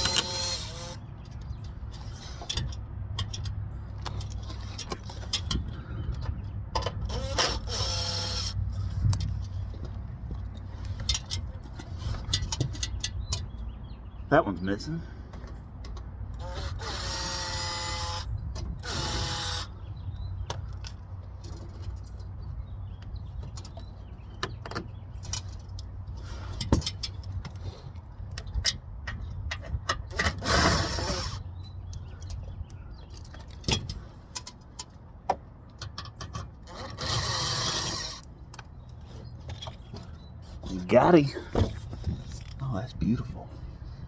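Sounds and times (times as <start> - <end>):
power drill motor whine: 0.0 - 1.0, 16.4 - 19.7.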